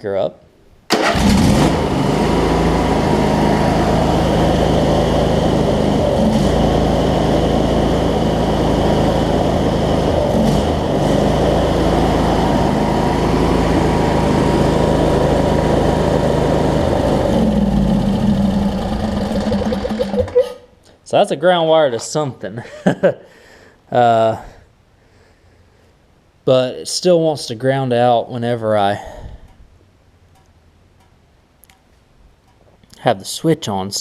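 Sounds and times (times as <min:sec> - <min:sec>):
riding mower engine running: 0:00.9 - 0:20.6.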